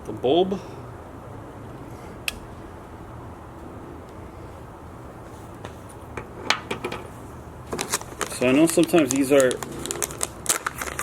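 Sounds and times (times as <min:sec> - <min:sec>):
steady low hum: 0:00.0 - 0:08.3.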